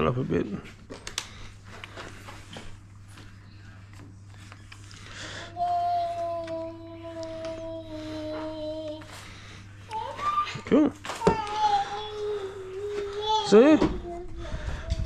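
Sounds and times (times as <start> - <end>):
child humming: 5.2 - 15.0.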